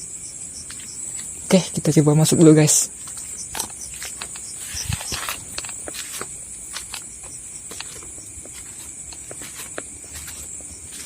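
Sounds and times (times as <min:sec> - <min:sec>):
crickets chirping: 0:00.0 - 0:11.0
footsteps crunching on leaves: 0:02.9 - 0:11.0.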